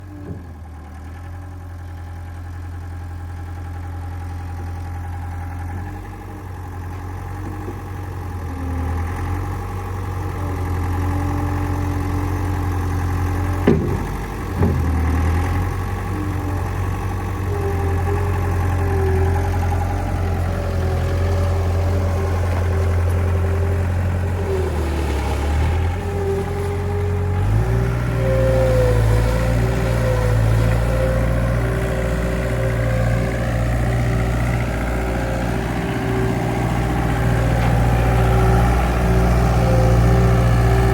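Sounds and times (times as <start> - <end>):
loader engine running: 0.0 - 40.9
sharp knocks: 13.6 - 15.2.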